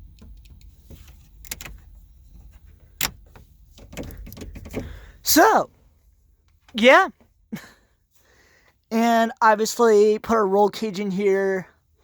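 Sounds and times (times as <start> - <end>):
van cab fittings clicking: 0.0 - 5.2.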